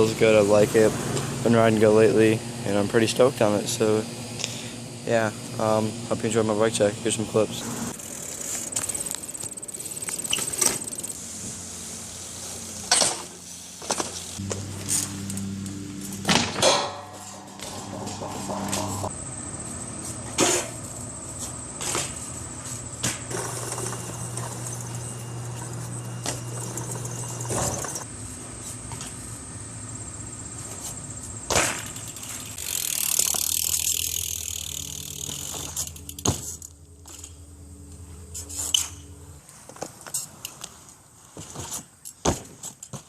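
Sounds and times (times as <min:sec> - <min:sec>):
steady low hum: 0:00.0 - 0:39.7
bike knocks and metal clanks: 0:08.4 - 0:11.2, 0:12.8 - 0:19.2, 0:20.0 - 0:28.1, 0:30.6 - 0:37.5, 0:38.2 - 0:40.6, 0:41.3 - 0:43.0.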